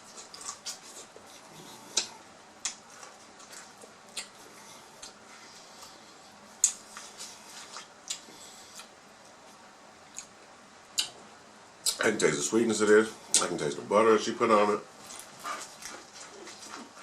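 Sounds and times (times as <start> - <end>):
chewing with lip smacks: 0.0 - 10.4, 15.0 - 17.0.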